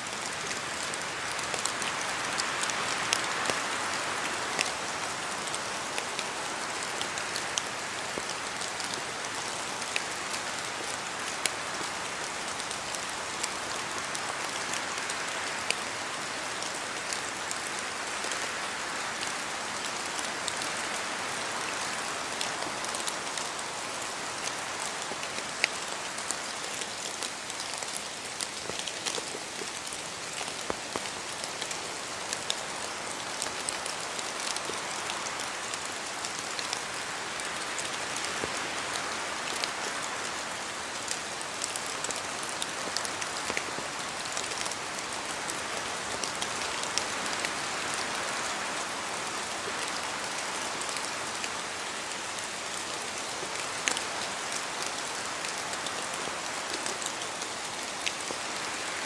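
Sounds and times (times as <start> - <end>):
steady rain hiss: 0.0 - 59.0
drops falling from trees: 25.0 - 34.7.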